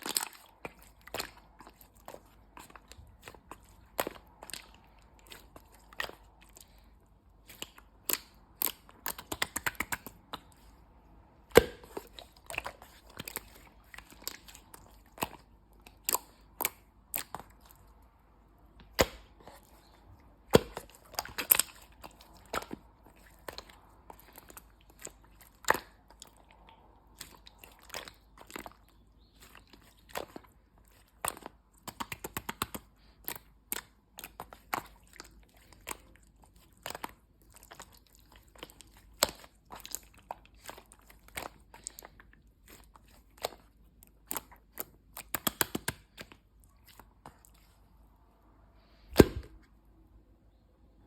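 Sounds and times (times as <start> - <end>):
slime popping and clicking: 44.2 - 46.2, 49.1 - 49.5.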